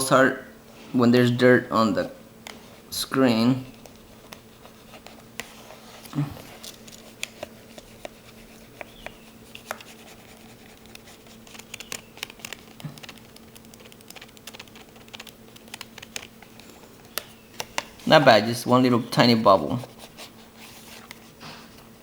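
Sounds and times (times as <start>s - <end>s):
faint steady hum: 0.0s - 22.0s
plastic clicks and taps on screen: 10.8s - 17.9s.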